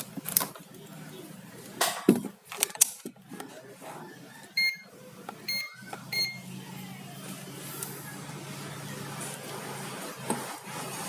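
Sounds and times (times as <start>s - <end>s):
short electronic beeps: 4.6s - 4.9s, 5.5s - 6.5s.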